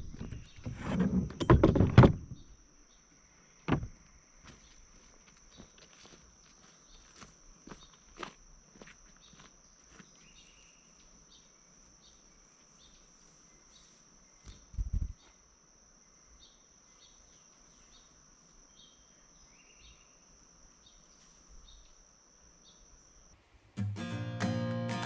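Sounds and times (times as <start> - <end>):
insects droning and chirping: 0.0 - 25.0
low thump: 3.7 - 4.0.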